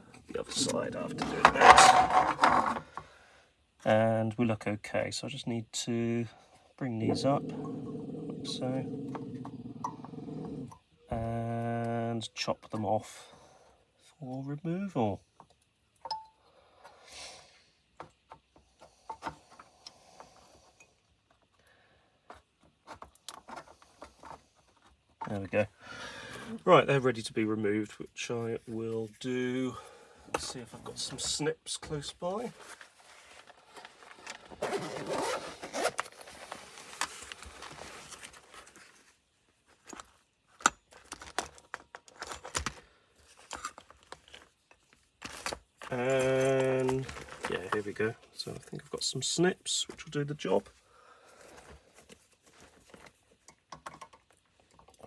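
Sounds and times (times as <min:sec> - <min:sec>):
rasping rustling scrape: 0:00.5 - 0:03.0
hands handling circuit board: 0:00.6 - 0:03.0, 0:39.7 - 0:48.0
tools clicking and knocking: 0:53.5 - 0:55.0.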